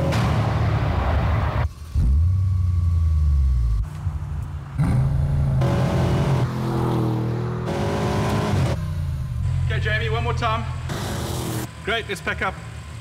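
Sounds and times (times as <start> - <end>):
car engine revving: 0.0 - 11.7.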